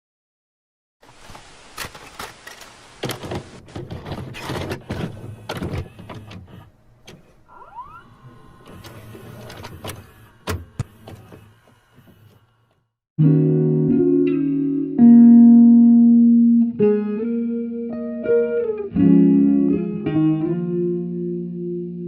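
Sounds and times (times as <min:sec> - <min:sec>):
noisy mechanical background: 0:01.0 - 0:12.9.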